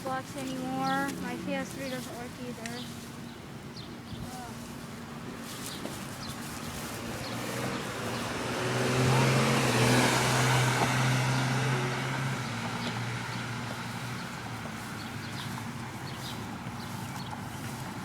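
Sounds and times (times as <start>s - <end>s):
car driving past: 7.2s - 18.0s.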